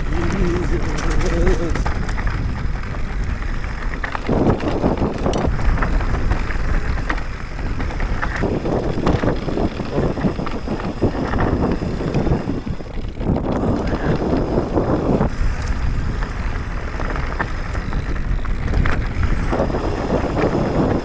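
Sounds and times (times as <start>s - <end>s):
tyres crunching on rocks: 0.0s - 12.4s
bike rattling and knocking: 0.0s - 21.0s
wind buffeting microphone: 0.0s - 21.0s.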